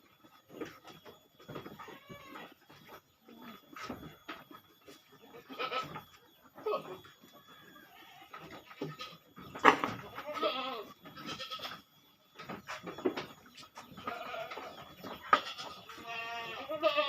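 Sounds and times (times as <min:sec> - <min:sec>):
goats bleating: 0:01.8 - 0:02.6, 0:05.3 - 0:06.0, 0:10.1 - 0:11.8, 0:14.0 - 0:17.0.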